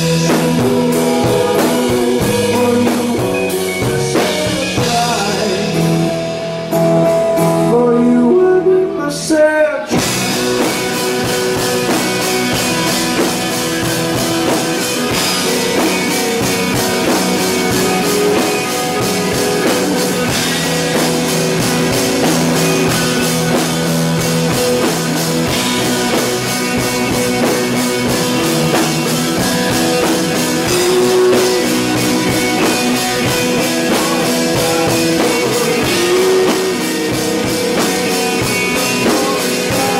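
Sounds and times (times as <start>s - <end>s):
drum kit: 0.0s - 9.2s, 9.8s - 39.9s
person singing: 0.0s - 11.8s, 25.4s - 39.9s
electric guitar: 0.0s - 39.9s.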